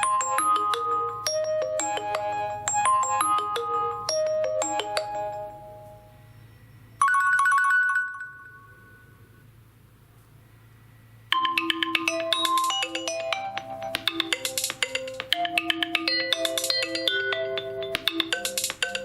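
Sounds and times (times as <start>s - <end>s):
faint low hum: 0.0s - 7.2s, 8.3s - 14.5s
bell-like ringtone melody: 0.0s - 9.3s, 11.3s - 19.0s.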